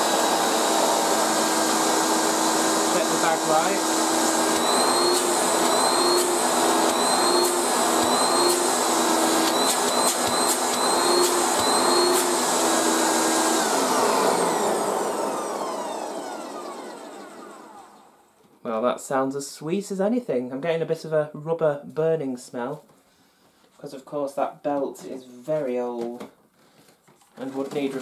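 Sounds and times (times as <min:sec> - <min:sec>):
motor winding down whine: 0:00.0 - 0:18.2
upright vacuum cleaner running: 0:00.0 - 0:18.3.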